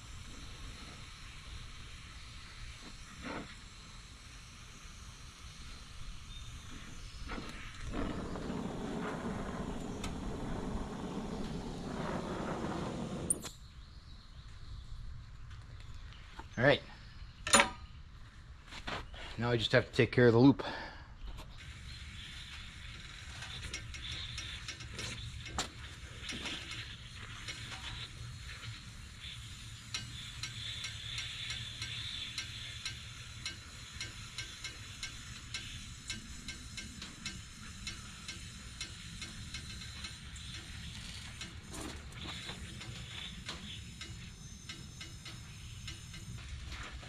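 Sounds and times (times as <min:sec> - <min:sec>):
steady low hum: 0:00.0 - 0:47.0
hand tool ratcheting against metal: 0:23.4 - 0:28.0, 0:29.9 - 0:46.7.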